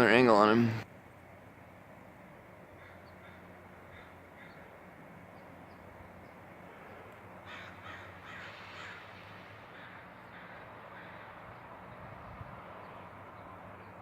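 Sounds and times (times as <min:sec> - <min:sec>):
faint outdoor background: 0:00.0 - 0:14.0
bird cawing: 0:02.7 - 0:05.0, 0:06.6 - 0:12.1.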